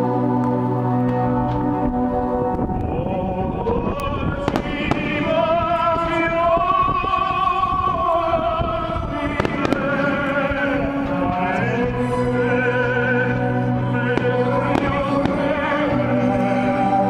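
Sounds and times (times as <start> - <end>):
operatic singing: 0.0 - 17.0
fireworks bangs: 4.1 - 7.3, 8.6 - 10.9, 14.1 - 15.9.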